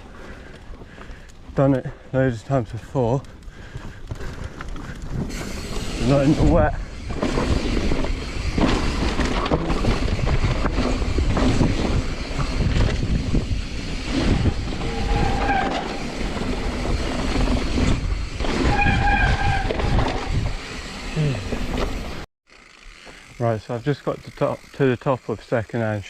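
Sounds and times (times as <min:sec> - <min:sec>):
tyres on dirt: 0:00.0 - 0:26.0
bike rattling over bumps: 0:02.4 - 0:25.0
wind rushing over microphone: 0:04.1 - 0:20.7
short high squeals: 0:14.8 - 0:16.1, 0:18.6 - 0:20.0.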